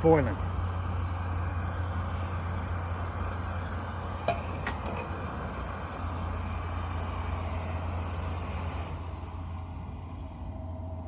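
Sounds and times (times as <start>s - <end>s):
camp stove burner rushing: 0.0s - 11.0s.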